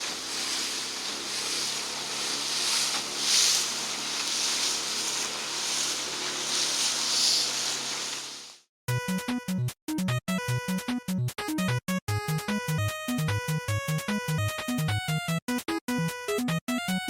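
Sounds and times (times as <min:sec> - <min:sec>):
outboard motor humming: 0:00.0 - 0:08.6.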